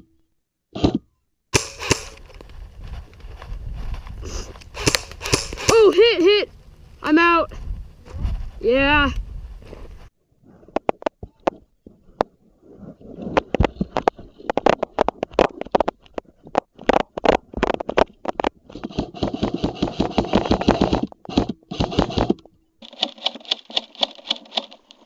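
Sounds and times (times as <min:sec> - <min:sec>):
airsoft guns firing: 0:01.6 - 0:02.3, 0:04.7 - 0:05.9.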